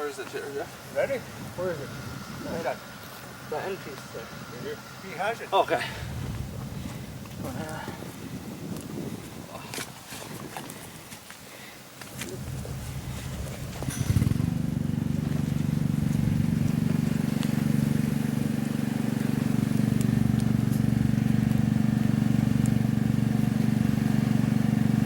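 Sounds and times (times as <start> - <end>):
small pump engine running: 0.6 - 7.3, 12.1 - 25.0.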